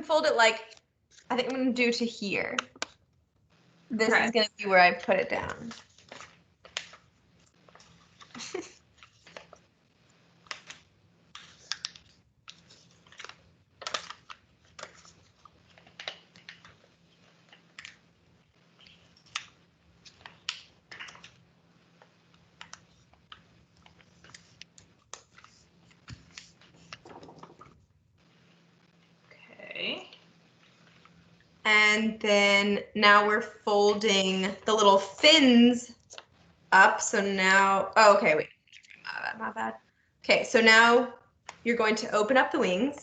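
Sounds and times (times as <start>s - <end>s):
paper being folded and creased: 4.8s - 28.6s, 30.6s - 31.2s.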